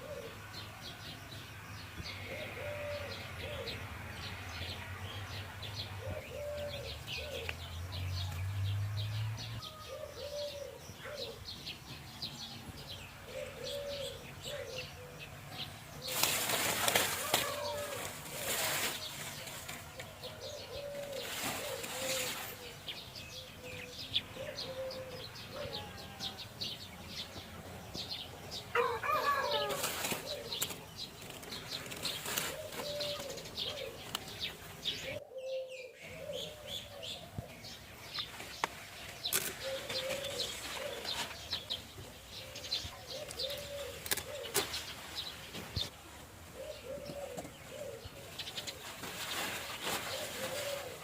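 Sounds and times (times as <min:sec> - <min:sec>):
doves cooing: 0:00.0 - 0:00.7, 0:02.1 - 0:04.2, 0:05.7 - 0:08.0, 0:09.6 - 0:11.7, 0:12.7 - 0:37.9, 0:39.0 - 0:51.0
small birds chirping: 0:00.0 - 0:51.0
rustles and clicks: 0:16.0 - 0:20.2, 0:21.0 - 0:22.8, 0:29.6 - 0:34.8, 0:48.3 - 0:51.0.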